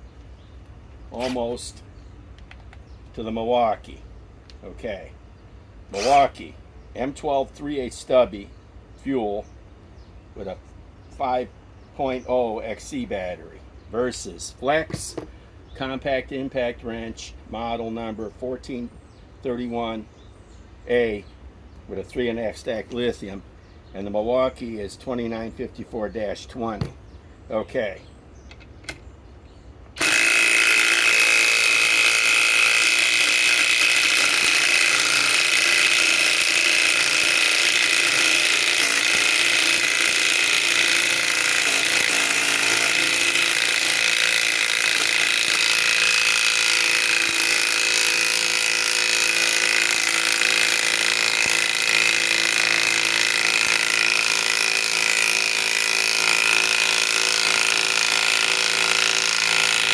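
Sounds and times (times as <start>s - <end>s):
impact wrench hammering: 30.0s - 59.9s.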